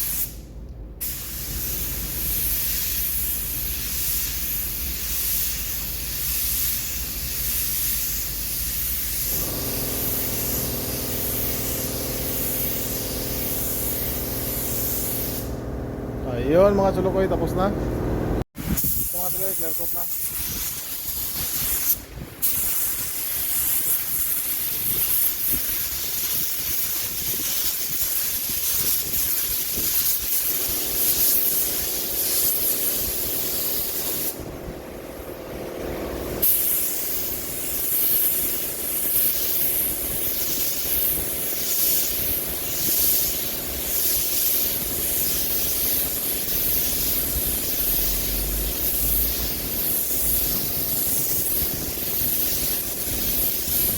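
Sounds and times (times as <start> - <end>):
air spray gun hissing: 0.0 - 0.4, 1.0 - 53.9
steady hum: 9.1 - 18.5.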